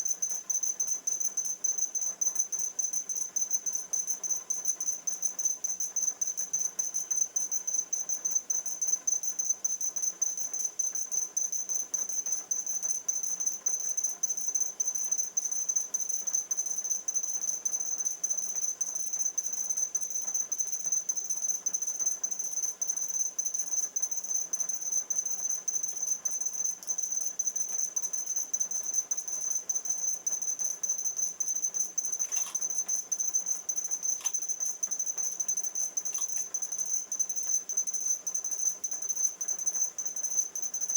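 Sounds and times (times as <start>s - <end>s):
short high-pitched beeps: 32.2s - 33.2s.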